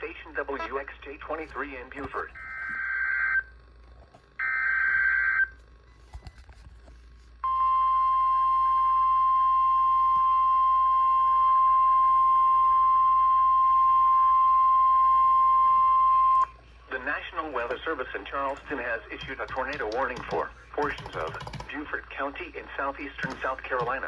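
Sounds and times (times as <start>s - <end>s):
steady alarm tone: 7.5s - 16.8s.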